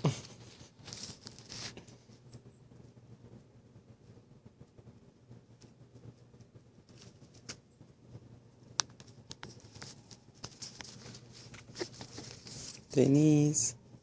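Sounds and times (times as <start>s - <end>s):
soft high rustle: 0.0s - 3.0s, 4.0s - 13.5s
parrots clicking and scratching: 8.8s - 12.9s.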